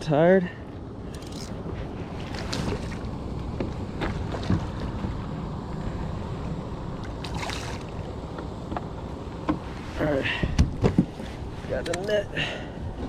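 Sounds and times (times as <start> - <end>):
water moving around kayak: 1.2 - 8.5.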